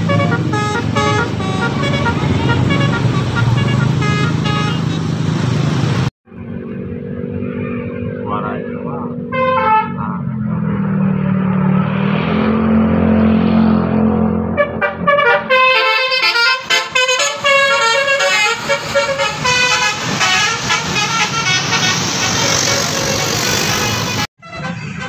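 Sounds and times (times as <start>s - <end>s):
multi-tone air horn tune: 0.0s - 5.0s, 9.2s - 10.0s, 14.5s - 25.0s
bus engine rumbling: 0.0s - 25.0s.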